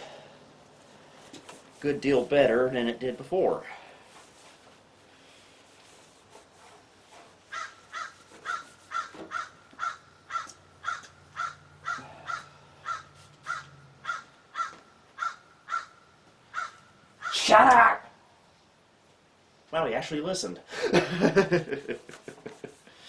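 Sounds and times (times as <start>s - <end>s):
animal calling: 7.5s - 17.4s.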